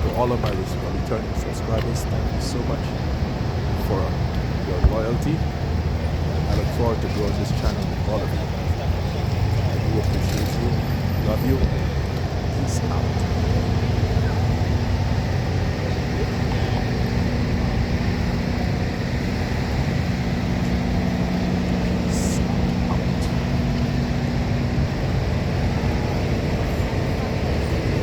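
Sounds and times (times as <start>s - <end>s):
held hum: 0.0s - 28.0s
vehicle engine rumble: 0.0s - 28.0s.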